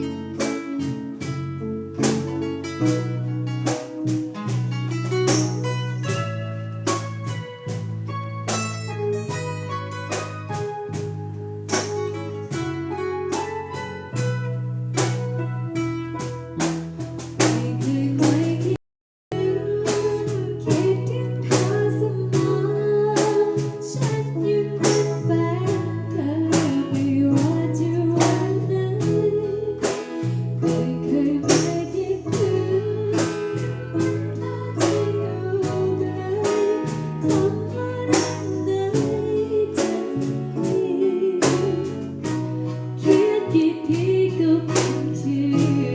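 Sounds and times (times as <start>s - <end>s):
plucked guitar: 0.0s - 45.9s
woman singing: 17.4s - 45.9s.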